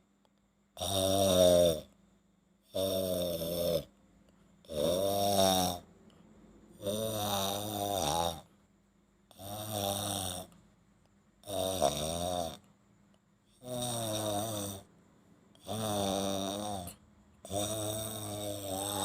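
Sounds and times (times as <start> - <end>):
man snoring: 0.8 - 2.0, 2.6 - 4.0, 4.6 - 5.9, 6.7 - 8.5, 9.3 - 10.6, 11.4 - 12.6, 13.5 - 14.9, 15.5 - 19.0.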